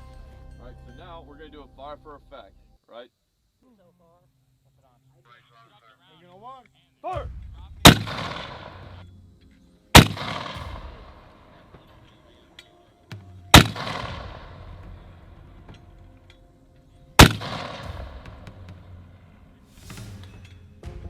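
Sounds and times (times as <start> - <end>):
mortar firing with echo: 7.1 - 16.3, 17.1 - 20.6.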